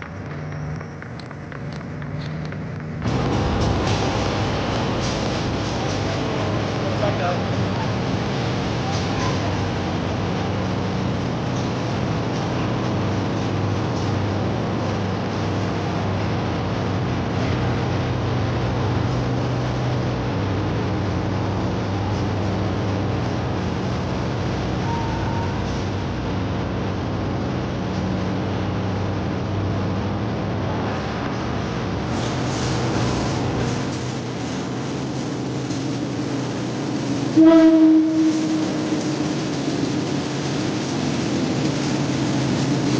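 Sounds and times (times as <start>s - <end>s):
locomotive engine running: 0.0s - 42.9s.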